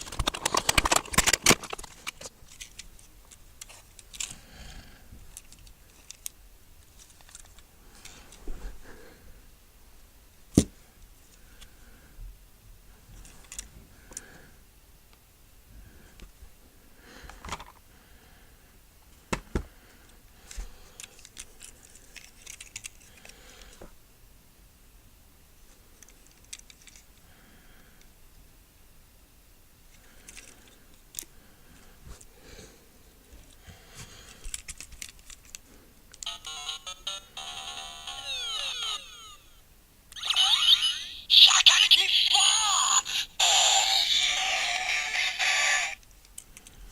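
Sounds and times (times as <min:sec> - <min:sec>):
small hard objects rattling: 0:00.0 - 0:02.8.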